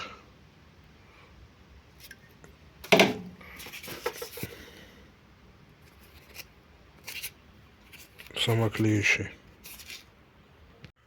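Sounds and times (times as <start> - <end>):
foam sheet rustling and scratching: 3.5 - 4.4, 5.8 - 8.5, 9.6 - 10.1.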